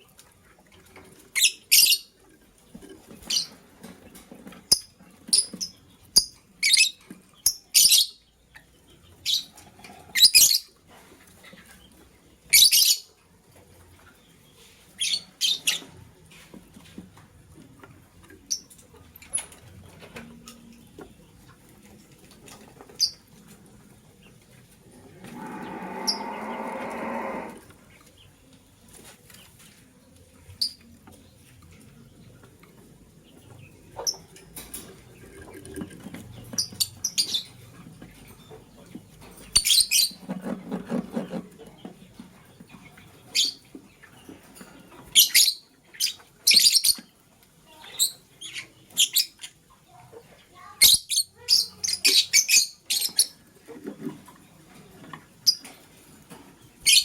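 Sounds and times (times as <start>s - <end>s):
lovebirds chirping: 18.4s - 40.4s.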